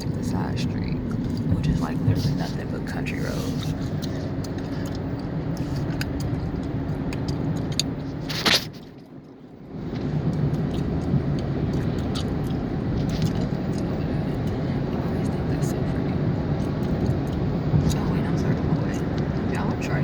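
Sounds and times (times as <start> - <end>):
car engine and road rumble: 0.0 - 20.0
gum clicks and smacks: 3.9 - 9.4, 10.3 - 14.6, 16.6 - 18.0.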